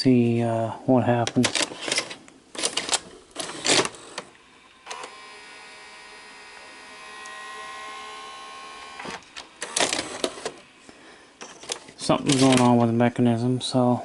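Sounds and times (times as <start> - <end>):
loading motor whirring with whine: 2.6 - 12.8.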